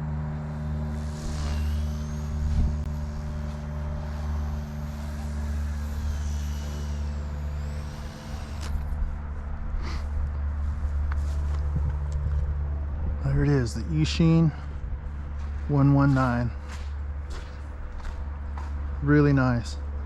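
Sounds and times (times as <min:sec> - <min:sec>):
steady low rumble: 0:00.0 - 0:20.0
rc helicopter motor whining: 0:00.1 - 0:10.0.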